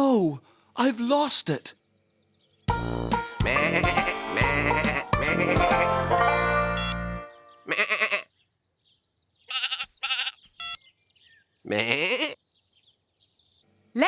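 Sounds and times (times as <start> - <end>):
cartoon sheep bleating: 3.4 - 6.0, 7.6 - 8.3, 9.5 - 10.8, 11.6 - 12.4.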